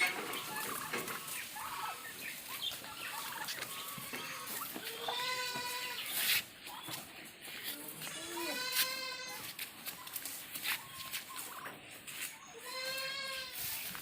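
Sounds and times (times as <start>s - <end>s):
farm animals calling: 0.0s - 14.0s.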